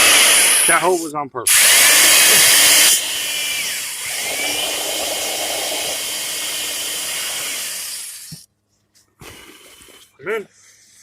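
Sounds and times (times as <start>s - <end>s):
power drill running: 0.0s - 0.9s, 1.5s - 8.4s.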